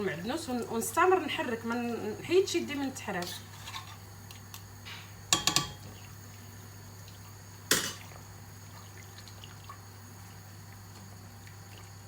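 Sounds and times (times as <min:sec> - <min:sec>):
spoon clacking against pot: 0:05.3 - 0:05.9, 0:07.7 - 0:08.0.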